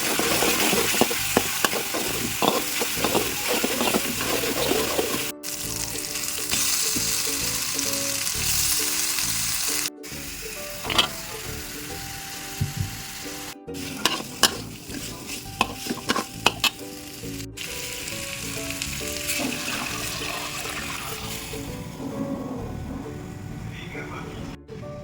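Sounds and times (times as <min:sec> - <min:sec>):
utensil scraping pan: 0:00.0 - 0:05.3, 0:10.8 - 0:11.3, 0:13.8 - 0:16.8
food sizzling in frying pan: 0:00.0 - 0:21.7.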